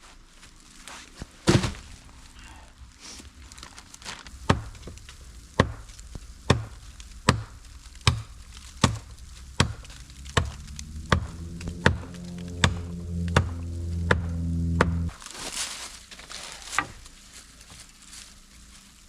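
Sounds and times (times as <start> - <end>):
music: 4.5 - 15.1.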